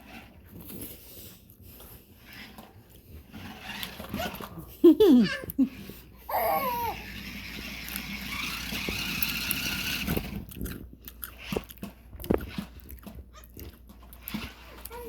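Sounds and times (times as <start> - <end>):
toy car electric motor whining: 0.0 - 0.4, 2.2 - 4.6, 5.2 - 10.5, 14.0 - 15.0
baby squealing: 5.0 - 5.7, 6.3 - 7.1.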